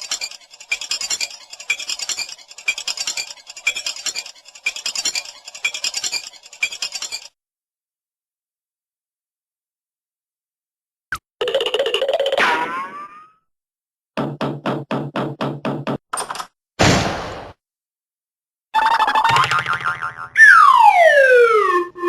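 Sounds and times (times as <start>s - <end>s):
cartoon scratchy clinking clatter: 0.0s - 7.4s.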